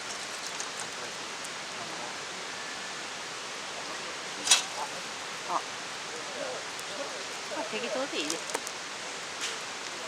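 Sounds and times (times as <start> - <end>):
steady outdoor hiss: 0.0 - 10.0
sharp crack: 4.4 - 4.8.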